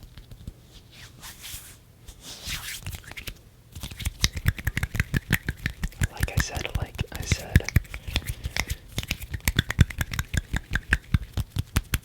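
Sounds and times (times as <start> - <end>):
hands rubbing softly: 0.7 - 4.1, 6.0 - 11.4
fingers tapping clicks: 7.6 - 12.0.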